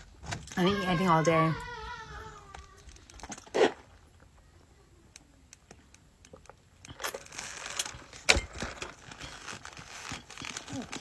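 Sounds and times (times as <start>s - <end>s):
paper wrapper crinkling: 7.0s - 11.0s.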